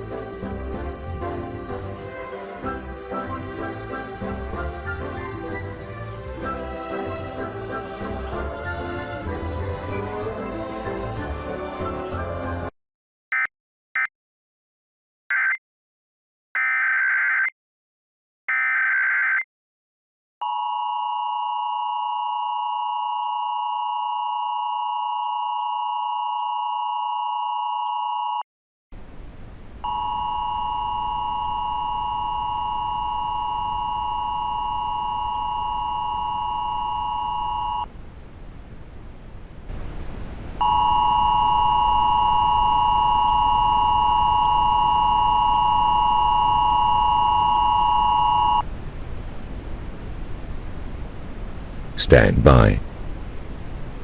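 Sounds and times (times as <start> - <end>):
two-tone attention signal: 29.9 - 37.9, 40.6 - 48.6.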